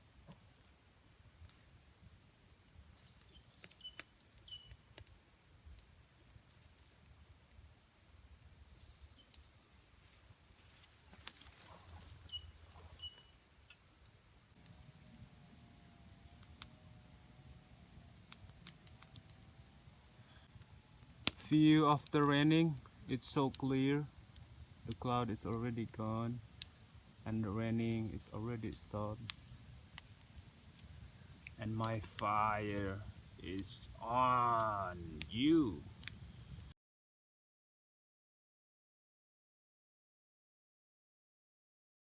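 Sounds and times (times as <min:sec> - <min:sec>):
insect chirping: 0:00.0 - 0:15.4, 0:16.7 - 0:17.3, 0:18.7 - 0:19.8, 0:26.2 - 0:36.6.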